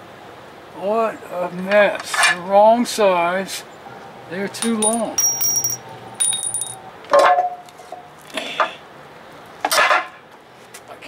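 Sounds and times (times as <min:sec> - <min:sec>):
metal parts clinking and rattling: 0:04.6 - 0:06.8.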